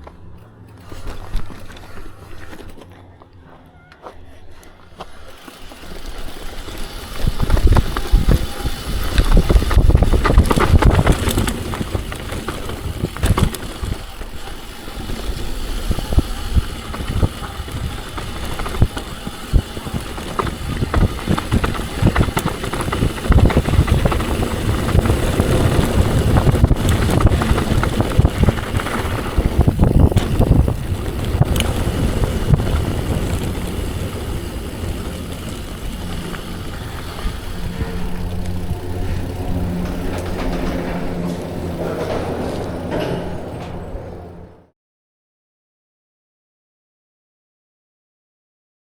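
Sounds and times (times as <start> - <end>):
bike tyres on dirt: 0.0 - 3.1, 3.8 - 43.8
bike rattling over bumps: 4.8 - 44.7
wind rushing over microphone: 6.9 - 43.5.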